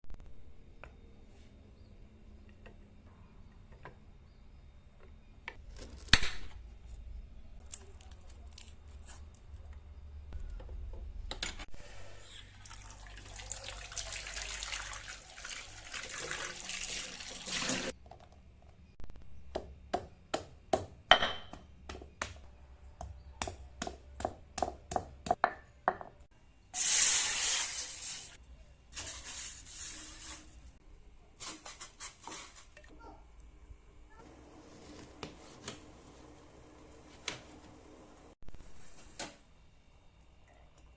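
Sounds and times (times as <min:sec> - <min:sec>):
water running: 0:12.5 - 0:18.0.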